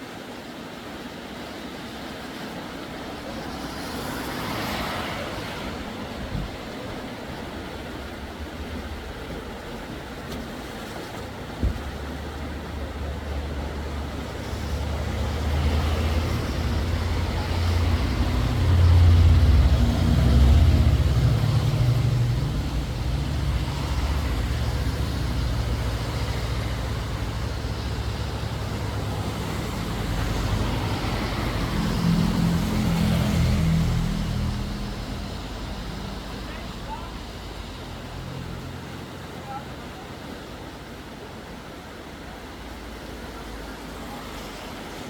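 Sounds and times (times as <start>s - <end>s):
engine running: 11.6s - 41.0s.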